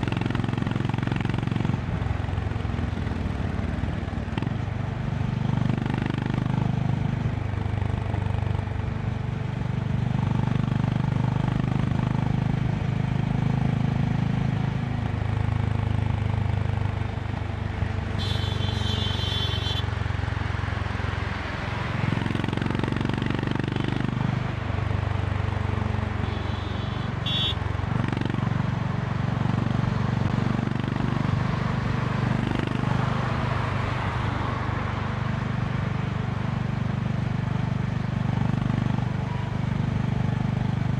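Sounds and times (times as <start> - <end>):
motorcycle engine at speed: 0.0 - 40.9.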